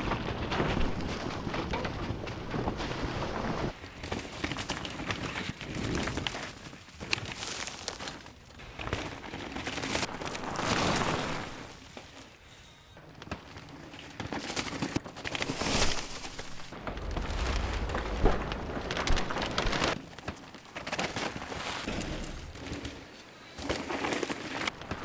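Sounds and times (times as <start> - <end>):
bike tyres skidding through dirt: 0.0 - 12.7, 13.3 - 25.0
deep rumble: 16.7 - 20.0
bike knocking and rattling: 18.3 - 25.0.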